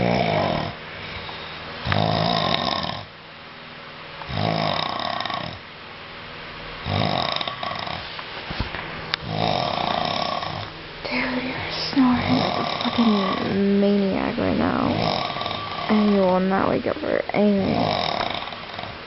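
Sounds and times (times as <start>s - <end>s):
man snoring loudly: 0.0s - 0.8s, 1.8s - 3.1s, 4.3s - 5.6s, 6.8s - 8.0s, 9.2s - 10.7s, 12.0s - 13.8s, 14.4s - 16.3s, 17.4s - 19.0s.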